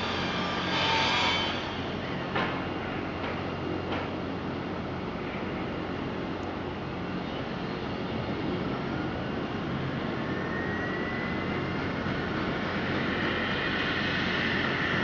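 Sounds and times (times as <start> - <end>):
turbine whine rising in pitch: 0.0 - 3.1, 7.5 - 15.0
helicopter turbine and rotor: 0.0 - 15.0.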